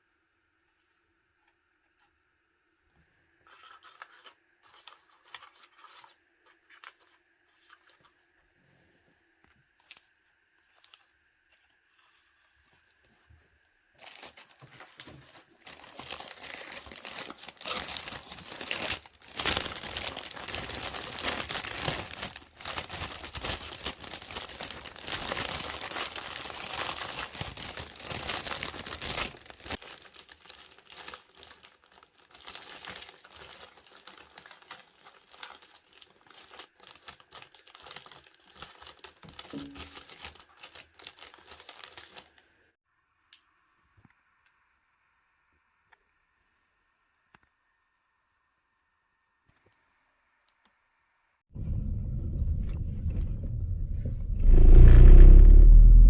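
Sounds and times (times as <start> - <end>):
wrapping material crinkling: 13.9 - 42.6
steady low hum: 51.6 - 56.0.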